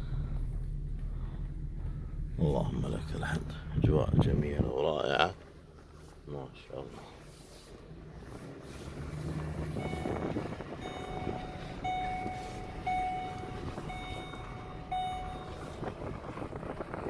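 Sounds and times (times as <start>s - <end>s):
engine rumble: 0.0s - 17.0s
wind noise: 9.2s - 17.0s
electronic warning beeps: 9.8s - 15.9s.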